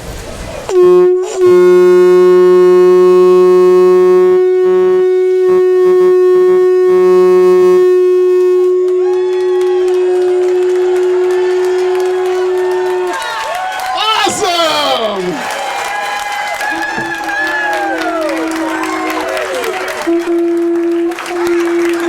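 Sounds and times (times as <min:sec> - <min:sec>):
lower second tone: 0:00.7 - 0:13.1
conch shell horn note: 0:00.7 - 0:13.2, 0:16.9 - 0:22.0.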